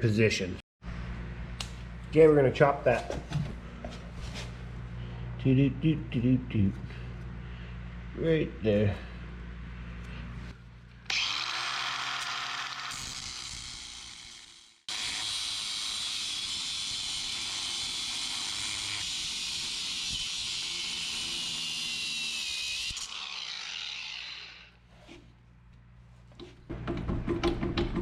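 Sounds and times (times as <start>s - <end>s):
angle grinder cutting metal: 11.1s - 24.8s.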